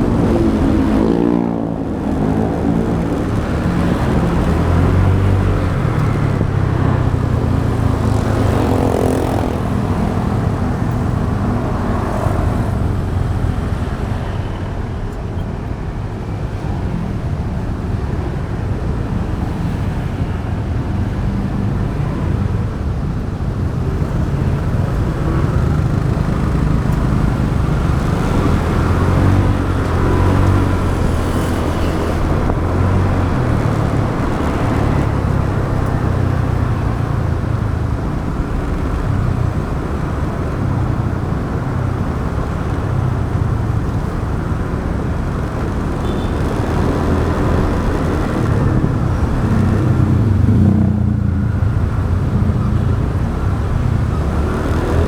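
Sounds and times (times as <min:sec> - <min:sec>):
road noise: 0:00.0 - 0:55.0
wind: 0:00.0 - 0:55.0
motorcycle engine running: 0:25.2 - 0:53.6.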